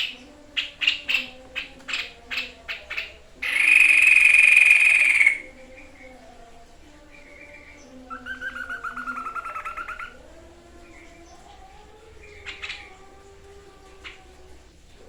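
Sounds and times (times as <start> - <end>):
bird trilling: 0.0 - 6.2, 7.2 - 11.4.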